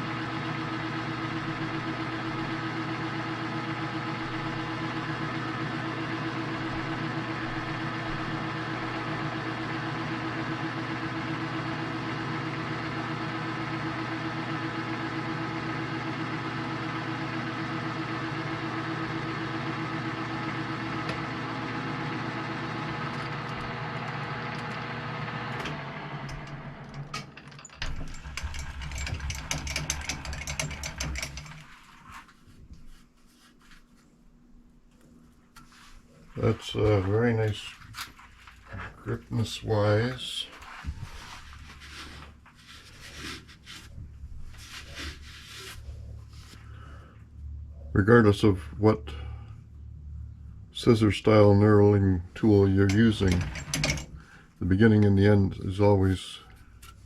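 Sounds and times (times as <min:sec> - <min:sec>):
metal lathe humming: 0:00.0 - 0:31.7, 0:52.5 - 0:54.3
clicks and rattles: 0:26.3 - 0:31.7, 0:52.9 - 0:54.2.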